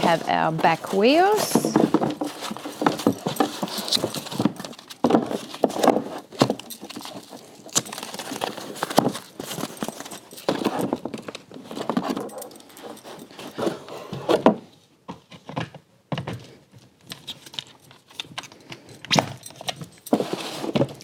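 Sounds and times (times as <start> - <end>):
packaging rustling: 0.0 - 14.4.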